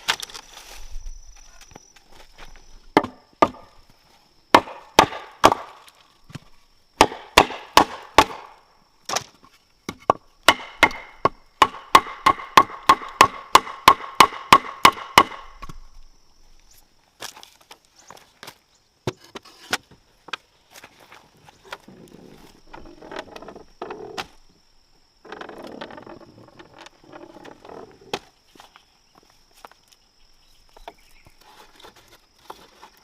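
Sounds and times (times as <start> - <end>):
blade chopping bamboo: 4.6 - 5.8, 7.0 - 9.3, 10.0 - 15.8.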